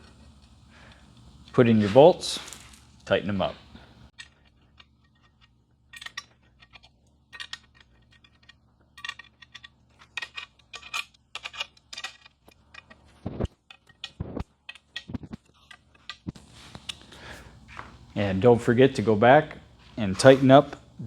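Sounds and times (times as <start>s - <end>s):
small metal clicks and ticks: 4.1s - 17.0s.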